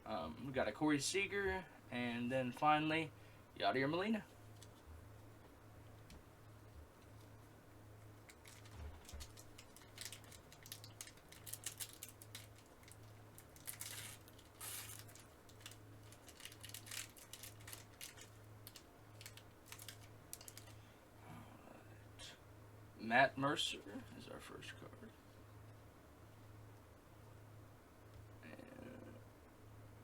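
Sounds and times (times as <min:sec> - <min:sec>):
foil pack tearing: 0:08.3 - 0:20.7
trading cards clicking and rustling: 0:08.3 - 0:20.8.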